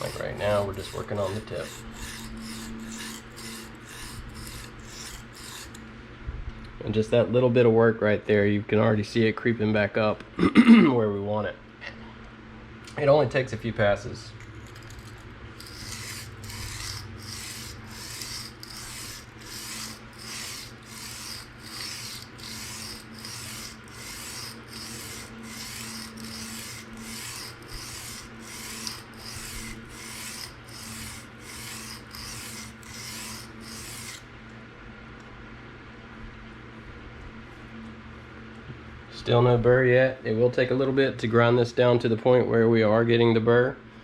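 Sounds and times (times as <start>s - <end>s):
knife scraping on sharpening stone: 0.0s - 5.8s, 15.6s - 34.2s.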